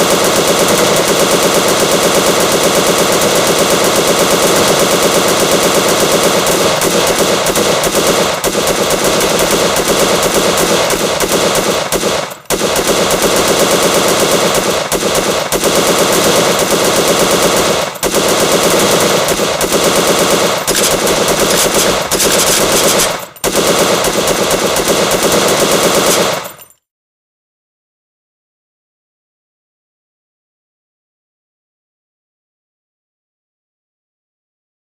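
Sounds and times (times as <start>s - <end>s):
machine gun firing full-auto: 0.0s - 26.8s.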